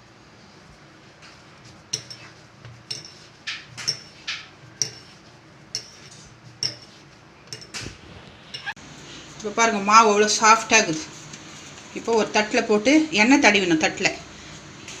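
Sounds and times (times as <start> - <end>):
dough slapping on a hard surface: 1.2 - 8.1.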